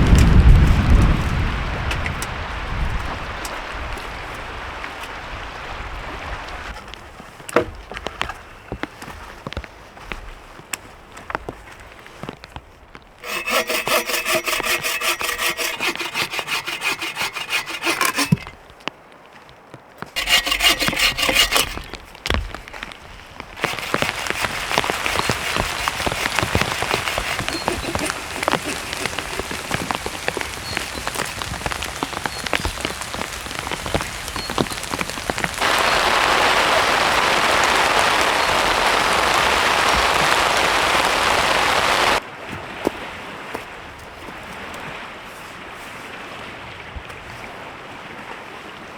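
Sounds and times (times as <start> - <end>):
hand saw cutting wood: 13.2 - 18.6, 20.2 - 22.4, 23.6 - 32.3
steady rushing hiss: 23.6 - 42.2.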